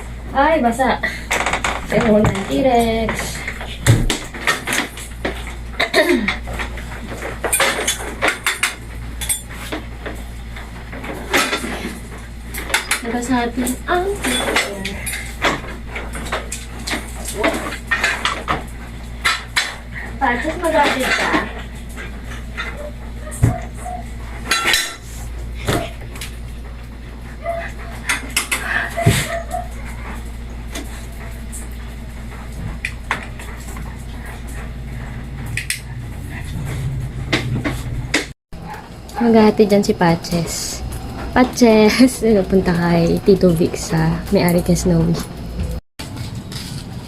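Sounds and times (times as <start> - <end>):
hard objects clinking and clattering: 1.3 - 25.0.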